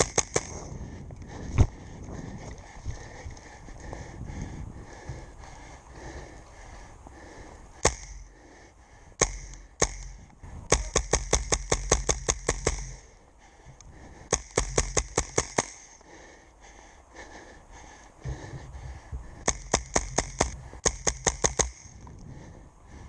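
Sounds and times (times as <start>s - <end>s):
airsoft rifle firing: 0.0s - 0.6s, 9.2s - 13.1s, 19.4s - 21.9s.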